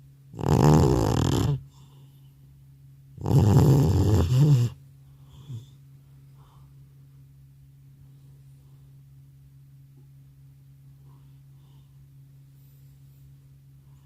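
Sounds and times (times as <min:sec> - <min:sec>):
cat snoring loudly: 0:00.3 - 0:01.6, 0:03.2 - 0:04.8
cat snuffle: 0:00.4 - 0:02.0, 0:03.2 - 0:05.8.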